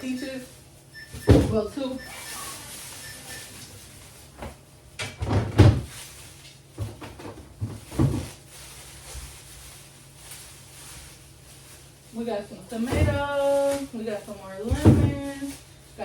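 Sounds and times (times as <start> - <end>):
refrigerator door opening or closing: 1.1 - 1.8, 4.4 - 5.9, 6.8 - 8.4, 12.8 - 13.4, 14.6 - 15.3
groceries knocking and thudding: 1.2 - 1.9, 3.7 - 15.7.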